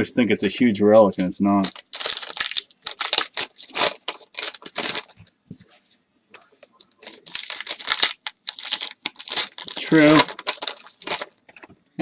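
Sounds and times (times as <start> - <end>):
cards and packaging crinkling: 1.1 - 5.4, 6.4 - 11.7.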